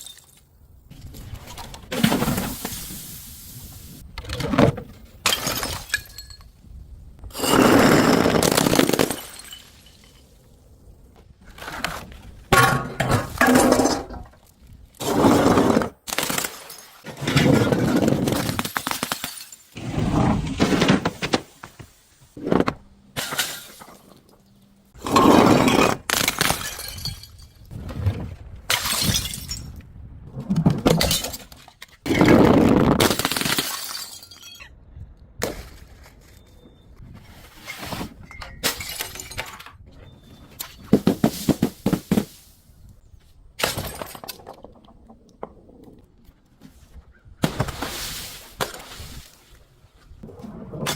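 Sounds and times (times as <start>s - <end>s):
glass bottles smashing: 5.3s - 6.5s, 8.6s - 10.2s, 18.4s - 19.8s, 26.2s - 27.6s, 28.7s - 29.7s, 33.2s - 34.7s, 38.3s - 39.7s
glass shards crunching and tinkling: 33.7s - 34.7s.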